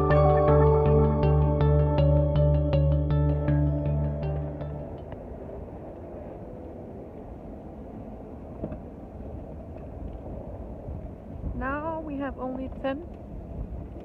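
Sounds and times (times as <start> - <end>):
background music: 0.0 - 5.0
wind and road noise: 2.0 - 14.0.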